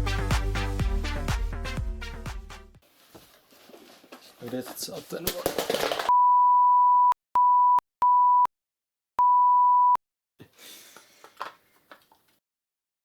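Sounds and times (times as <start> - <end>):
soft rustling: 2.8 - 5.2
censor bleep tone: 6.1 - 8.5, 9.2 - 10.0.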